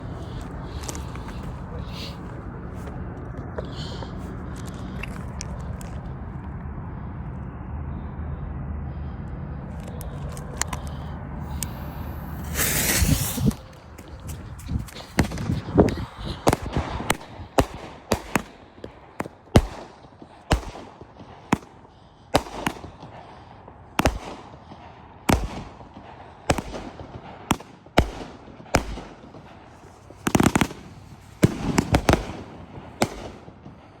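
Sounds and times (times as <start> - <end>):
low rumble: 0.0 - 18.1
firework rushing launch: 11.4 - 18.5
firework bangs: 11.4 - 21.8, 24.0 - 33.9.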